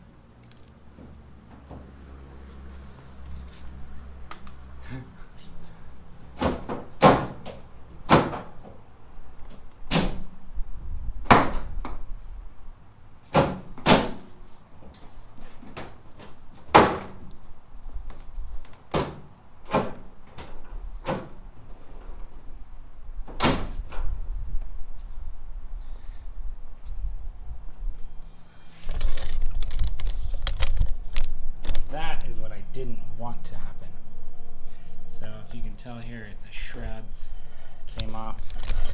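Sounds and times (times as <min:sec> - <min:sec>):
sharp knocks and clunks: 0:06.3 - 0:08.8, 0:11.2 - 0:12.0, 0:13.3 - 0:14.3, 0:15.6 - 0:17.2, 0:18.8 - 0:21.4.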